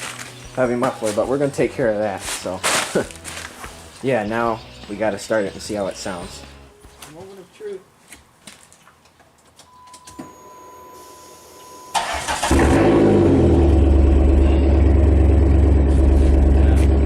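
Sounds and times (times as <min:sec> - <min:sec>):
engine cranking: 0:11.9 - 0:17.0
loud unmuffled engine idling: 0:12.5 - 0:17.0.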